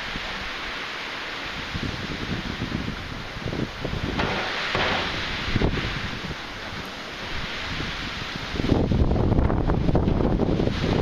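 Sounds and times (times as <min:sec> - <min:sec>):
wind buffeting microphone: 0:01.3 - 0:11.0
strong wind rushing: 0:01.4 - 0:11.0.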